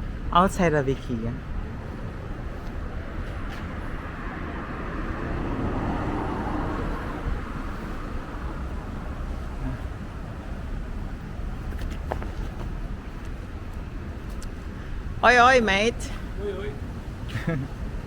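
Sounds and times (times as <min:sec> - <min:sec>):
road traffic hum: 0:00.0 - 0:18.0
vehicle passing by: 0:00.7 - 0:14.7.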